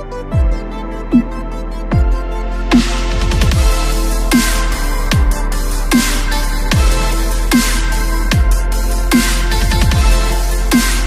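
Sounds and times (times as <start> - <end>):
electronic dubstep music: 0.0 - 11.0
deep kick drum: 0.4 - 4.0, 5.1 - 5.5, 6.7 - 7.1, 8.3 - 8.7, 9.6 - 10.3.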